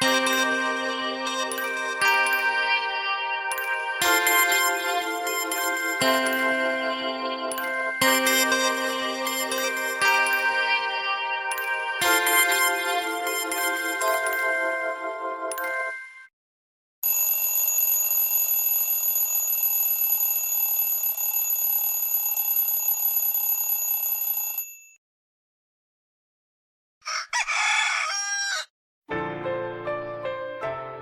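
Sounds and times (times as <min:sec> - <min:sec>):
piano melody: 0:00.0 - 0:16.0, 0:29.1 - 0:31.0
steady ringing tone: 0:17.0 - 0:24.9
phone chime: 0:17.0 - 0:25.0
rooster crow: 0:27.0 - 0:28.7.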